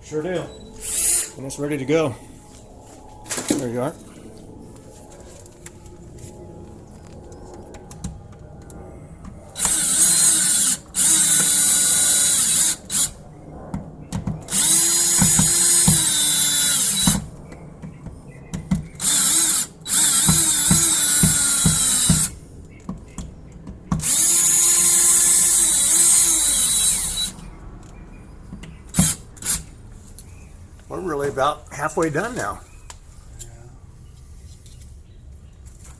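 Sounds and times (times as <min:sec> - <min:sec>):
power drill motor: 0:00.8 - 0:01.4, 0:09.5 - 0:13.2, 0:14.5 - 0:17.3, 0:18.8 - 0:22.4, 0:24.0 - 0:27.5, 0:28.9 - 0:29.7.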